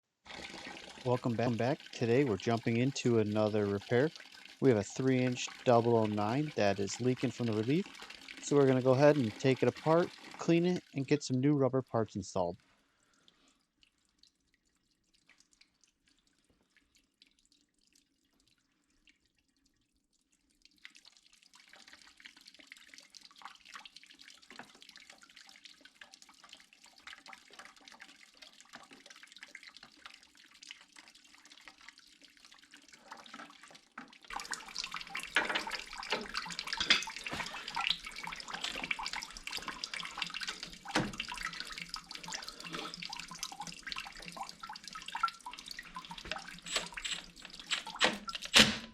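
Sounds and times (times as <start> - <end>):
water running and splashing: 0.2 - 11.1, 20.5 - 48.5
knocks and clicks: 46.2 - 48.9.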